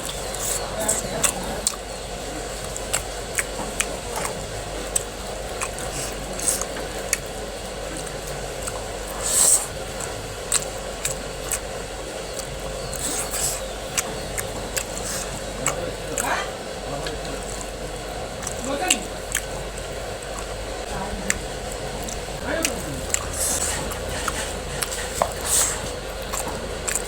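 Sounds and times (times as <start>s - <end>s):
chewing and lip smacks: 0.0s - 27.0s
steady background hum: 0.0s - 27.0s
rustling scrape: 23.3s - 26.1s.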